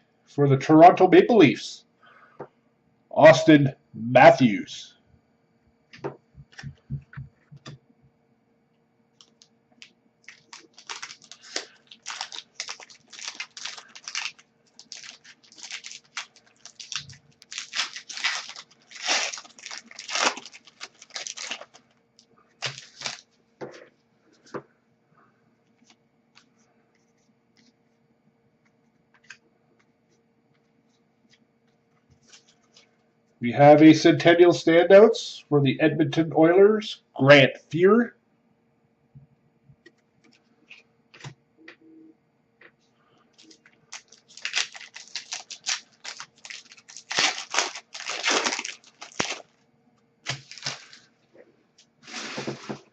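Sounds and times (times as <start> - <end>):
foil pack tearing and crinkling: 10.2 - 21.8, 22.6 - 23.3, 43.4 - 49.6, 50.2 - 51.1, 52.0 - 52.9.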